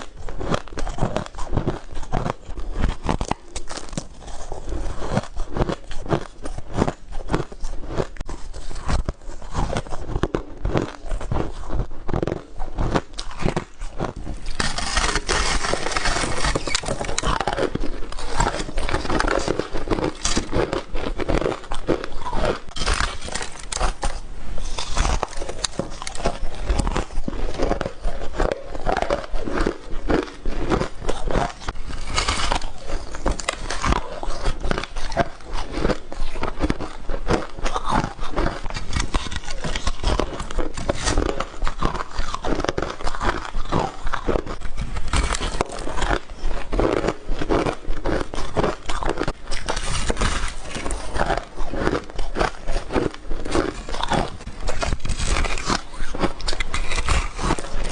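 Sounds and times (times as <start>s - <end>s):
ice being crunched: 12.1s - 57.9s.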